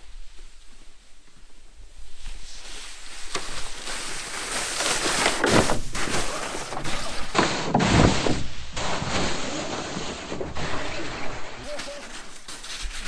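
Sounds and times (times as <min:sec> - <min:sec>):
sled hissing over snow: 0:01.5 - 0:13.0
sled thumps: 0:02.6 - 0:13.0.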